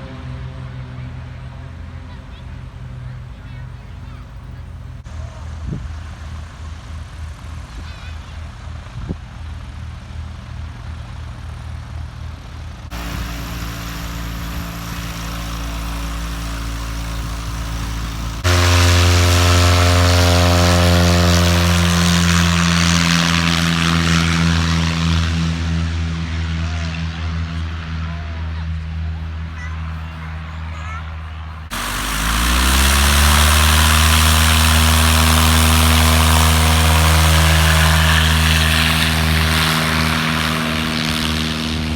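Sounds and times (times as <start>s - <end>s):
propeller airplane engine: 11.3s - 41.9s
propeller rush: 12.9s - 41.9s.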